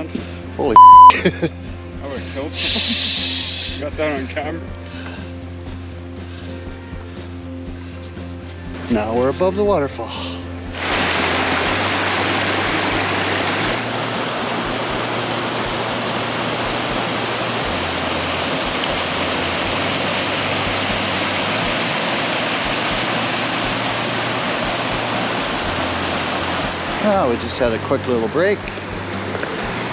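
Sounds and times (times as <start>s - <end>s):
waterfall roaring: 10.8s - 27.0s.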